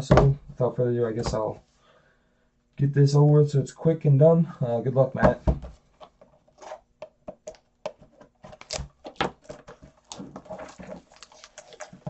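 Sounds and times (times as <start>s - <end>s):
cardboard clicks and rustles: 5.8s - 12.0s.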